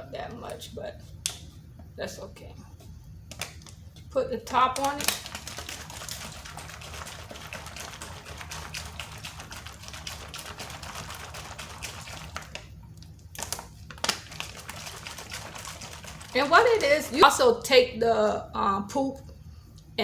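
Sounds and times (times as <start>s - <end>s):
water bottle rattling and sloshing: 4.8s - 12.7s, 13.4s - 17.4s.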